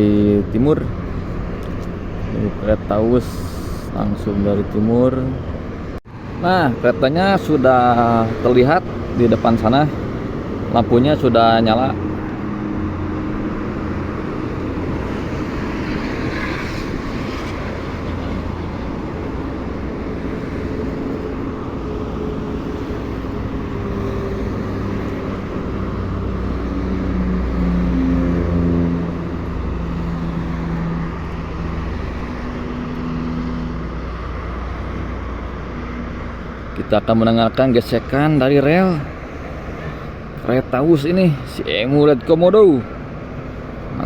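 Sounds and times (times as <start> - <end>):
electric train passing: 5.4 - 36.7.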